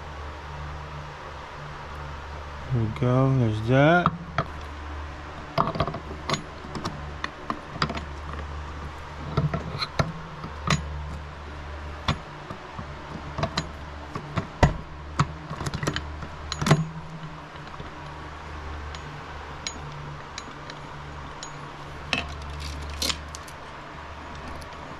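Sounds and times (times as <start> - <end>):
steady low hum: 0.0 - 24.9
metallic clicks of tools and parts: 18.9 - 23.6.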